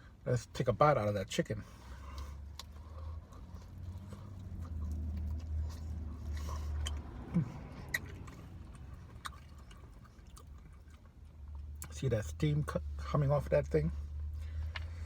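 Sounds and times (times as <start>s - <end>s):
man chewing food: 1.8s - 11.9s
wet mouth clicks: 6.7s - 10.7s.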